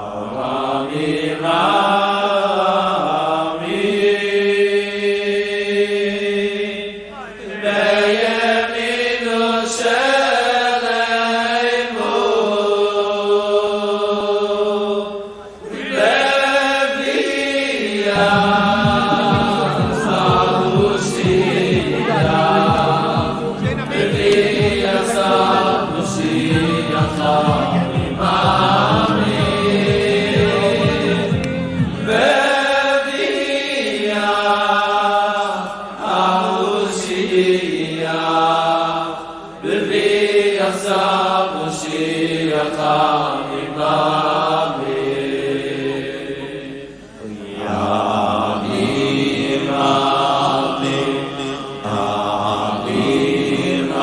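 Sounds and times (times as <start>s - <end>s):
voices chanting a melody: 0.0s - 54.0s
steady low beat: 18.2s - 32.3s.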